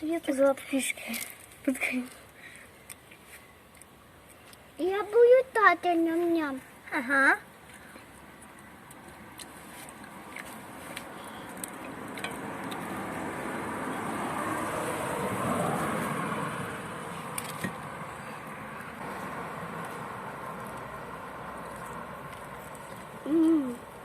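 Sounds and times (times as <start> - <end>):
vehicle passing: 8.7 - 24.0.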